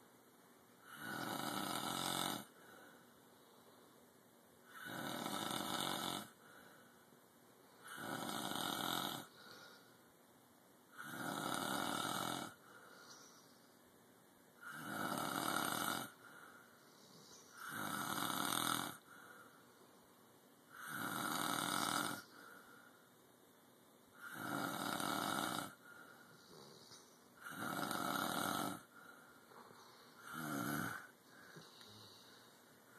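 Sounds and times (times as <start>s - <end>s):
quiet breathing: 0.0s - 32.9s
loud snoring: 0.8s - 2.5s, 4.7s - 6.4s, 7.8s - 9.3s, 10.9s - 12.6s, 14.6s - 16.2s, 17.6s - 19.0s, 20.7s - 22.3s, 24.2s - 25.8s, 27.4s - 28.9s, 30.1s - 32.2s.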